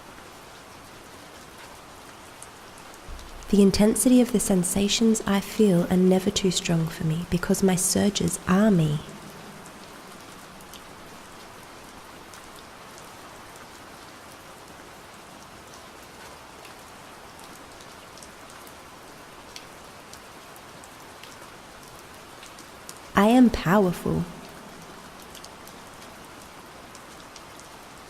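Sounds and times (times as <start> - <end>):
gentle rain falling: 0.0 - 28.0
raindrops ticking: 2.4 - 5.3, 24.2 - 28.0.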